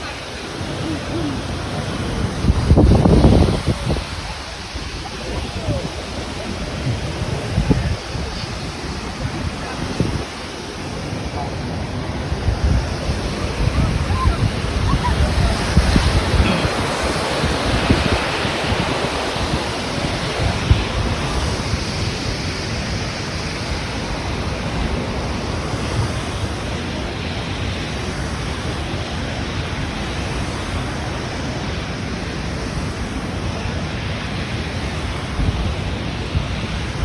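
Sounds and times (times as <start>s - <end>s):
steady rushing noise: 0.0s - 37.0s
wind buffeting the microphone: 0.0s - 37.0s.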